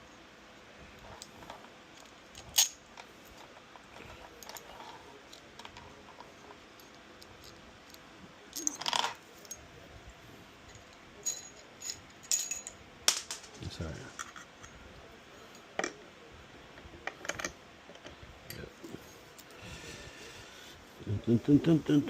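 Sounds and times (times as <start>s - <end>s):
metal hardware clicking and clinking: 1.0s - 3.1s, 3.8s - 9.6s, 10.6s - 13.6s, 17.0s - 18.6s.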